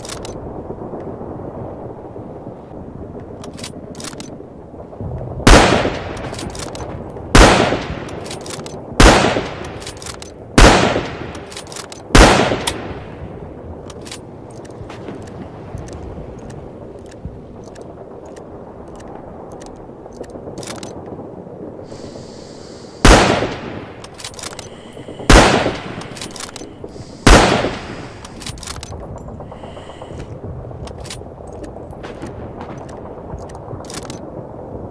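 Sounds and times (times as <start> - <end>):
rifle bolt clicks: 0.0 - 0.4, 3.4 - 4.3, 6.2 - 6.9, 8.0 - 8.8, 9.5 - 10.3, 11.3 - 12.8, 13.8 - 21.0, 24.0 - 24.7, 25.3 - 29.0, 30.8 - 31.7, 32.8 - 34.2
rifle shots with echo: 5.4 - 13.2, 23.0 - 28.9.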